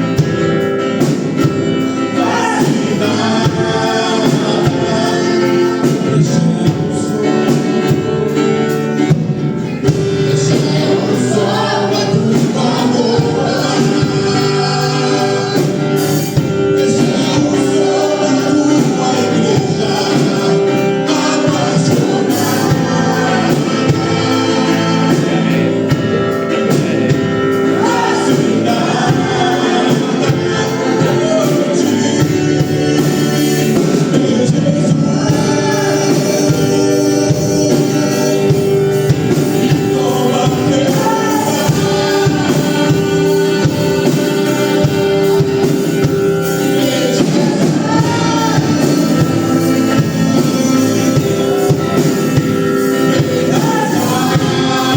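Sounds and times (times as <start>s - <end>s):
band playing: 0.0s - 54.9s
group of voices singing: 0.0s - 54.9s.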